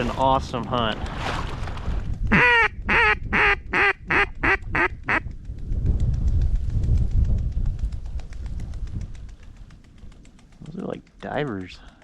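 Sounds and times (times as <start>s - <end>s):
low wind rumble: 0.0s - 12.0s
duck quacking: 2.3s - 5.2s.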